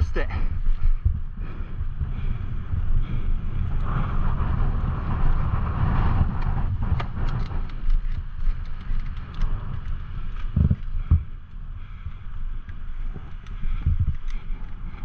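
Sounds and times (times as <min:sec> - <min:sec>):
wind buffeting microphone: 0:00.0 - 0:15.0
mountain bike rattling over rocks: 0:07.2 - 0:11.2.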